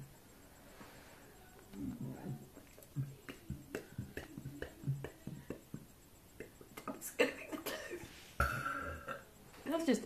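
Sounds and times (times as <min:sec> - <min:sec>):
throat clicks and gulps: 0:01.7 - 0:07.0
person burping: 0:07.7 - 0:09.3.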